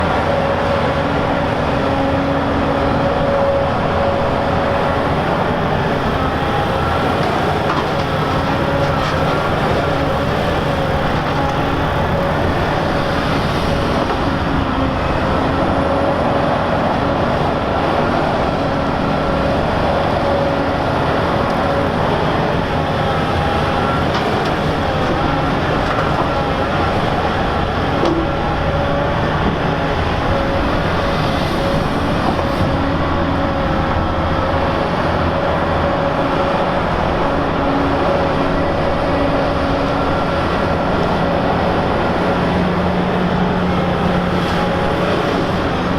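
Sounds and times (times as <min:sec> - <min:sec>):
heavy diesel machinery running: 0:00.0 - 0:45.9.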